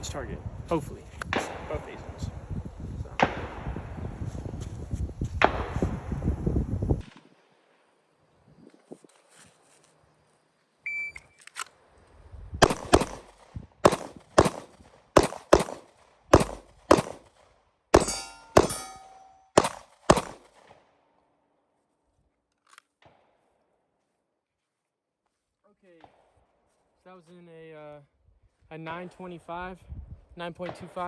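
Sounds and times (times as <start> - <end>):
shot timer beep: 10.9 - 11.4
pistol shots: 12.6 - 17.4, 18.0 - 20.8.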